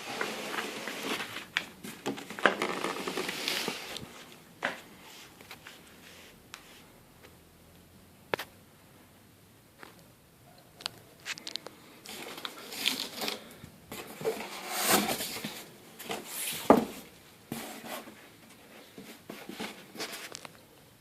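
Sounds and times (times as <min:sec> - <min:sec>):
packaging rustling and scraping: 0:00.0 - 0:06.8, 0:11.2 - 0:20.6.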